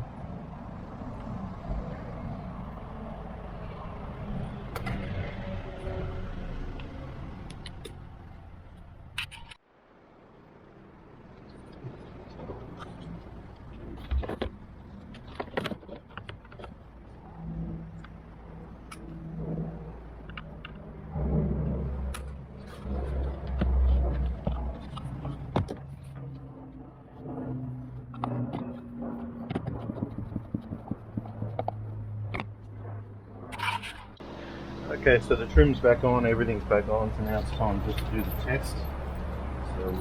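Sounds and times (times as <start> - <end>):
low rumble: 16.9 - 36.0.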